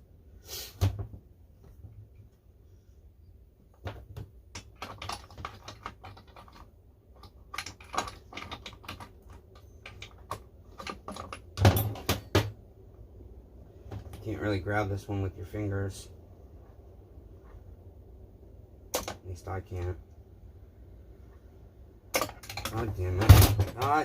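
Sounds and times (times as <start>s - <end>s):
clatter of small parts: 3.7s - 12.5s, 18.9s - 19.2s, 22.1s - 24.0s.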